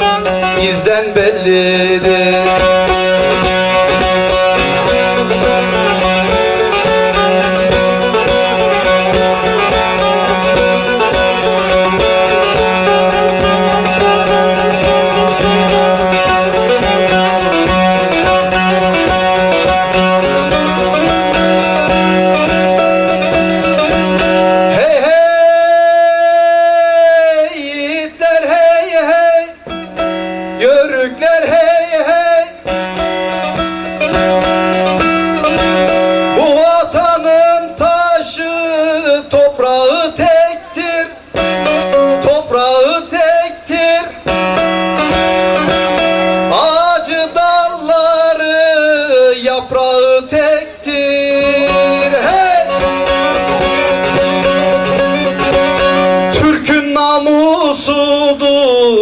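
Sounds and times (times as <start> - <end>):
person singing long wavering notes: 0.0 - 28.2, 28.8 - 56.8
plucked lute folk melody: 0.0 - 58.9
steady drone note: 2.0 - 24.8, 51.4 - 56.4.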